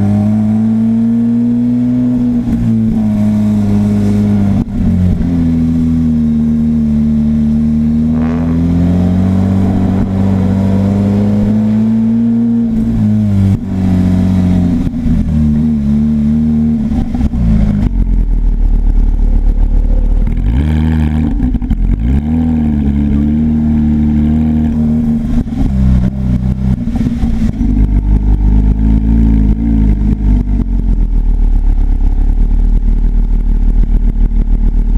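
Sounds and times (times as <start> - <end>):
crackling exhaust burble: 0.0 - 34.9
sports car engine revving: 0.0 - 34.9.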